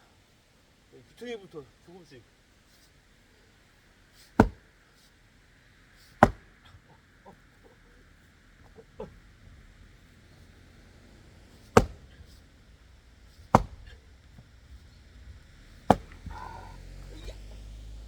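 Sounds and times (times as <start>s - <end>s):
axe chopping firewood log: 4.3s - 4.8s, 6.1s - 6.8s, 11.5s - 12.5s, 13.3s - 14.5s, 15.6s - 17.7s.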